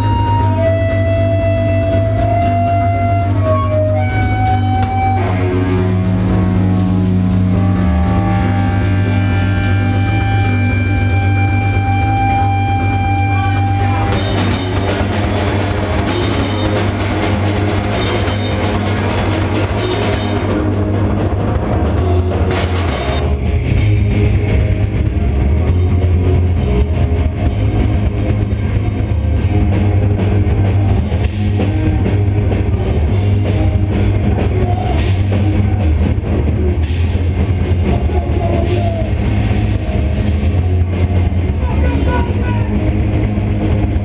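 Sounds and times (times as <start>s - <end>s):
loud rock music: 0.0s - 44.0s.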